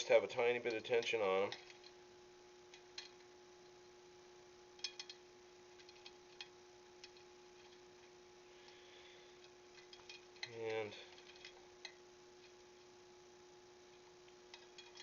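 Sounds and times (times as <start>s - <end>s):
faint steady hum: 0.0s - 15.0s
small metallic clicks and clinks: 4.8s - 5.2s, 13.9s - 15.0s.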